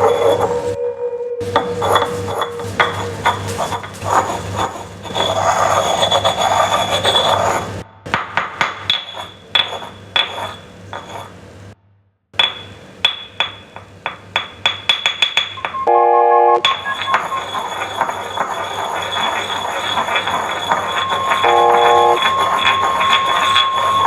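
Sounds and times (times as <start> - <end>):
clinking taps: 12.4 - 15.9, 16.6 - 24.0
dense noisy texture: 16.6 - 24.0.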